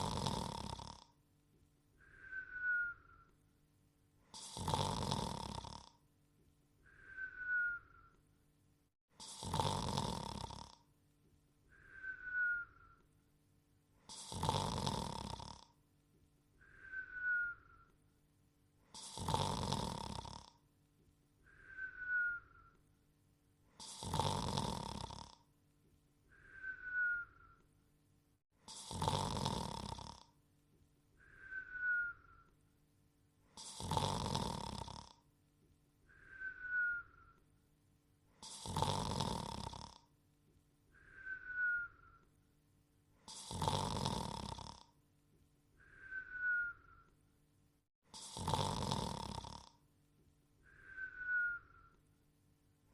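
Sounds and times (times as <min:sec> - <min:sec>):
cartoon rasping snore: 0:00.0 - 0:01.2, 0:04.3 - 0:06.0, 0:09.1 - 0:10.9, 0:14.0 - 0:15.8, 0:18.9 - 0:20.6, 0:23.8 - 0:25.5, 0:28.6 - 0:30.4, 0:33.5 - 0:35.2, 0:38.4 - 0:40.1, 0:43.2 - 0:45.0, 0:48.0 - 0:49.8
short falling whistle: 0:02.2 - 0:03.3, 0:06.9 - 0:08.1, 0:11.9 - 0:13.0, 0:26.4 - 0:27.6, 0:31.3 - 0:32.4, 0:36.1 - 0:37.3, 0:41.0 - 0:42.2, 0:45.8 - 0:47.1, 0:50.7 - 0:51.9.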